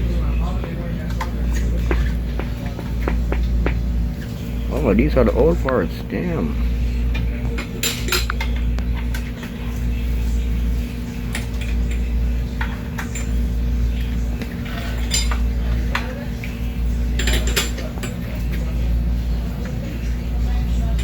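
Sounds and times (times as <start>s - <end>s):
steady low hum: 0.0s - 21.0s
metal bicycle parts clinking: 14.8s - 15.4s.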